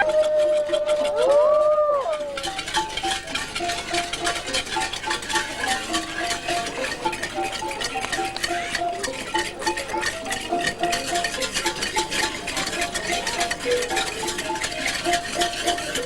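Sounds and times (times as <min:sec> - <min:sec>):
quick rattling percussion: 0:00.0 - 0:16.0.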